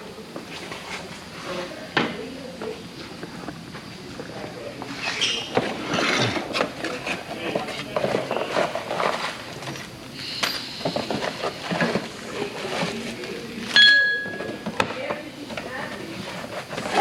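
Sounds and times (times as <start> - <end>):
parts being handled: 5.0 - 17.0.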